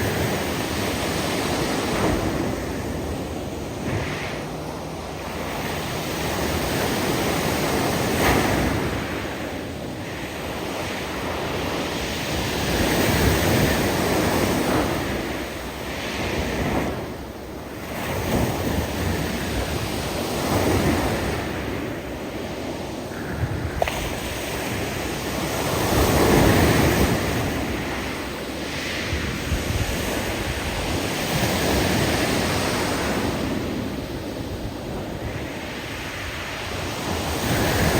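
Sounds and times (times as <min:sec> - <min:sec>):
waves breaking on stones: 0:23.2 - 0:34.0.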